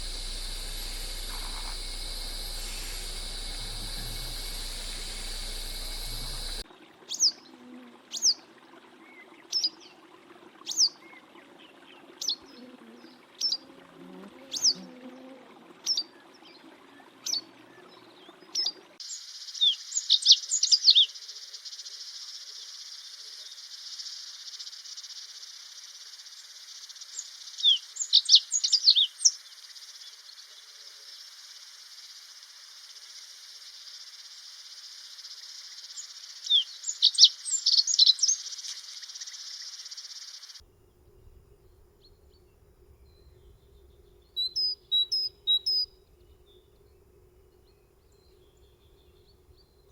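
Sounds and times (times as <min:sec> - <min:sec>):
faint low hum: 0:00.0 - 0:06.6
insect drone: 0:00.0 - 0:06.6, 0:19.0 - 0:44.4
songbird chirping: 0:00.0 - 0:07.5, 0:15.8 - 0:49.9.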